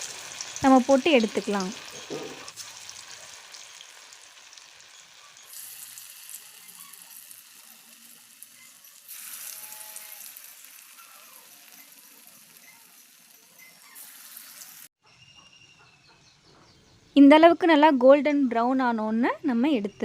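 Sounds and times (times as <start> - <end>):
oil sizzling while deep-frying: 0.0 - 15.0.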